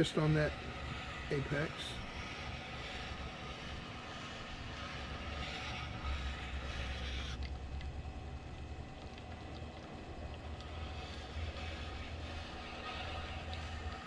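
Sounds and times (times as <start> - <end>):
blade hissing on strop: 0.0 - 7.5, 10.6 - 14.0
sharpening machine motor hum: 0.0 - 7.8, 10.5 - 14.0.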